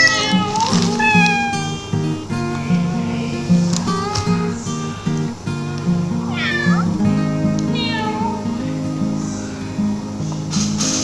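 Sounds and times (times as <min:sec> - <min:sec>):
kitten meowing: 0:00.0 - 0:03.2, 0:06.3 - 0:08.6
light background music: 0:00.0 - 0:11.0.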